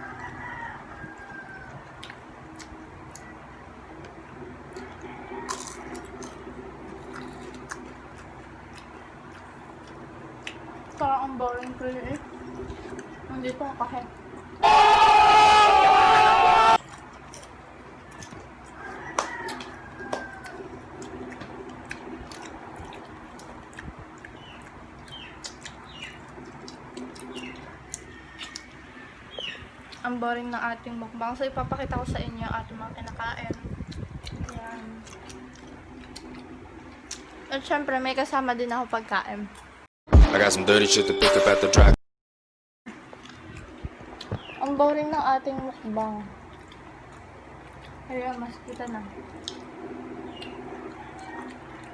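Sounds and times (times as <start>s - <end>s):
steady low hum: 0.0s - 40.7s, 42.9s - 51.9s
chewing bread: 0.1s - 14.6s, 16.8s - 30.6s, 32.9s - 39.8s, 42.9s - 51.9s
small bird chirps: 29.3s - 29.7s.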